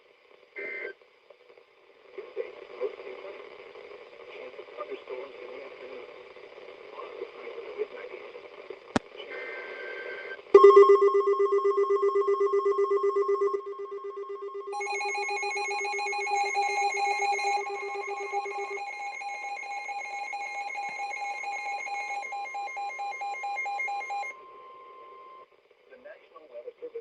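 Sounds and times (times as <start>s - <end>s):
pulsing high alert tone: 10.6s - 24.3s
steady electronic tone: 10.6s - 24.4s.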